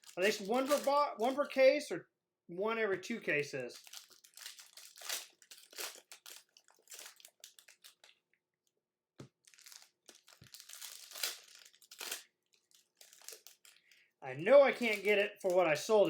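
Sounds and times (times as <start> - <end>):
card pack wrappers crinkling: 0.0 - 1.5, 3.7 - 8.2, 9.2 - 16.0.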